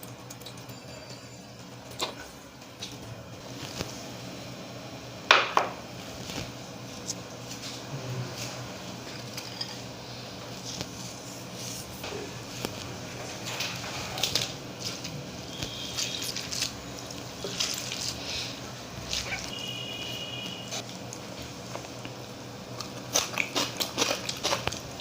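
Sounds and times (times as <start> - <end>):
wet squishing of mashed rice: 14.2 - 20.0, 20.7 - 25.0.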